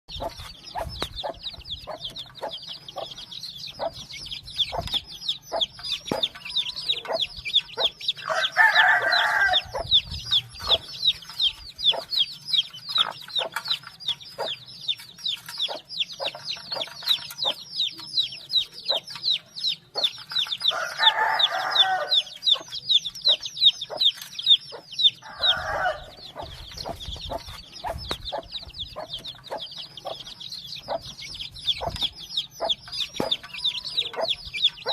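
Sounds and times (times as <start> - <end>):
baby chicks peeping: 0.1 - 34.9
adult chicken calling: 4.6 - 12.2, 20.7 - 22.7, 24.7 - 31.1.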